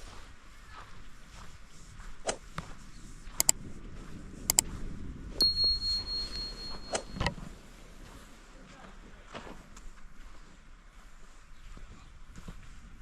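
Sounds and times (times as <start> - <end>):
footsteps crunching in snow: 0.0 - 5.1, 7.8 - 13.0
sharp metallic clinks: 5.4 - 7.3
high-pitched ringing tone: 5.4 - 7.4.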